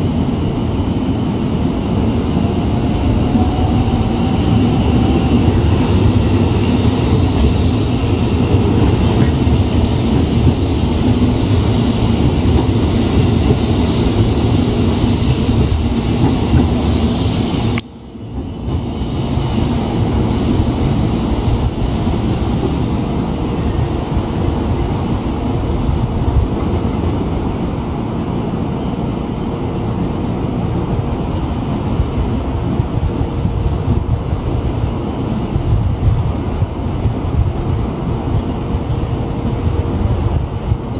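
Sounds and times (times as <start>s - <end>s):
rail clatter: 2.4s - 27.8s.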